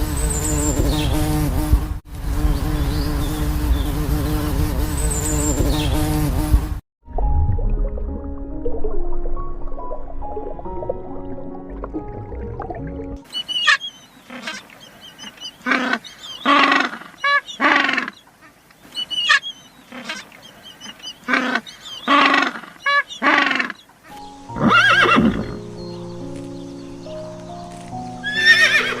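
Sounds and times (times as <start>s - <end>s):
animal calls: 13.3s - 25.6s
horse whinnying: 24.6s - 25.6s, 28.2s - 29.0s.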